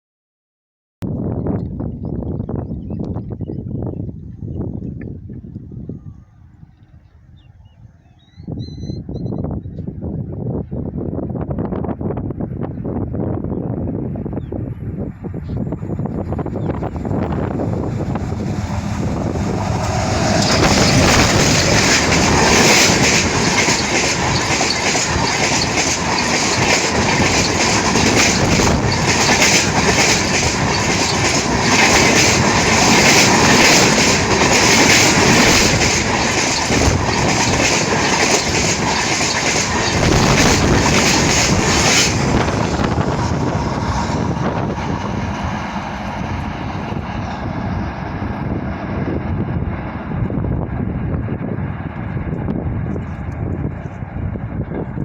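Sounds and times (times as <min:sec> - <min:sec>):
train wheels clattering: 0:16.9 - 0:46.8.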